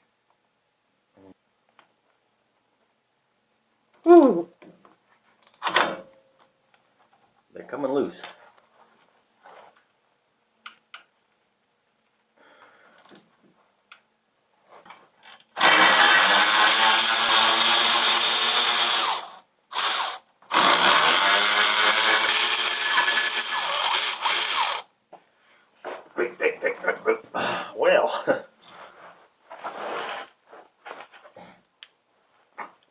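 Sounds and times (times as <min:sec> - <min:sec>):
power tool motor running: 0:15.6 - 0:24.8.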